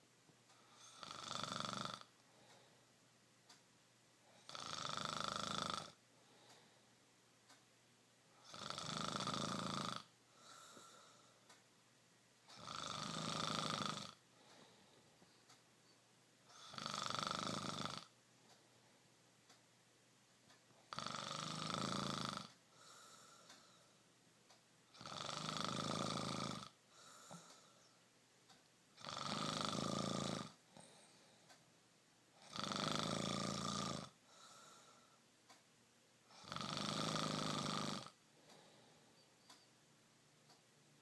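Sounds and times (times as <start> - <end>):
person snoring: 0.6 - 2.7, 4.3 - 6.6, 8.4 - 11.3, 12.5 - 15.0, 16.5 - 18.1, 20.9 - 24.0, 24.9 - 27.8, 29.0 - 31.4, 32.4 - 35.2, 36.3 - 39.0.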